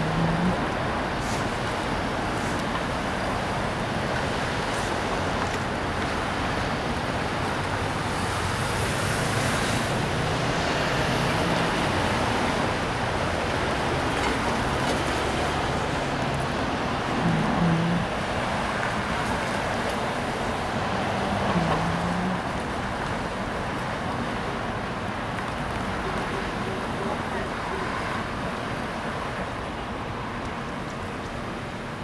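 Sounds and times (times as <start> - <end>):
freight train rolling past: 6.7 - 17.2.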